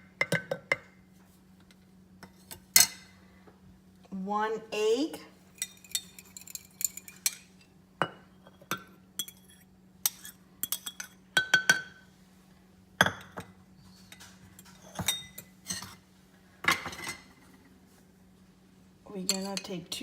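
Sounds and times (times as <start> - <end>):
utensils clinking on dishes: 5.5 - 7.6, 13.0 - 16.0, 19.2 - 19.8.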